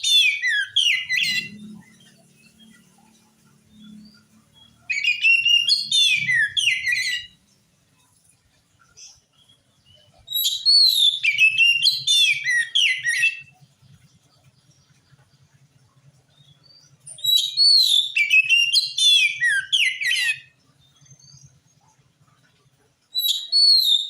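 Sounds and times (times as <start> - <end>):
bird singing whistled phrases: 0.0 - 1.8, 3.7 - 7.4, 9.9 - 13.6, 16.6 - 21.4, 23.2 - 24.0.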